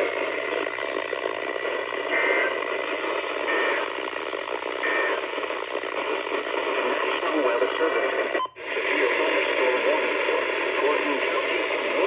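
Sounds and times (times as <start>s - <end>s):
short data bursts: 0.0s - 7.5s
radio static: 0.0s - 12.0s.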